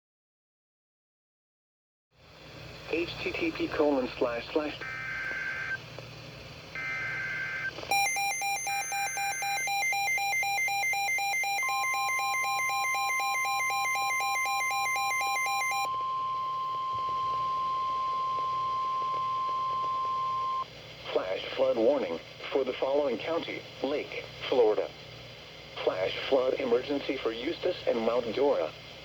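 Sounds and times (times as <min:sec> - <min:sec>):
screeching digital data bursts: 0:04.8 - 0:05.8, 0:06.8 - 0:20.6
steady warning alarm tone: 0:04.8 - 0:05.8, 0:06.8 - 0:20.6
fast-pulsing electronic alarm beep: 0:06.8 - 0:20.6.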